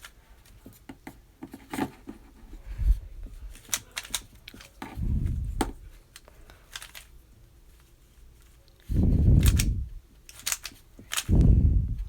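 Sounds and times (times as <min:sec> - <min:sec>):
plastic cube clicking: 0:03.6 - 0:04.8, 0:09.4 - 0:11.4.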